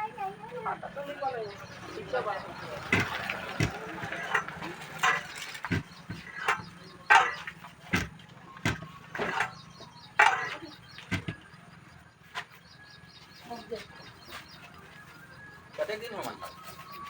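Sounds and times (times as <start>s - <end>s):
sharp knocks with brief ringing: 2.8s - 9.6s.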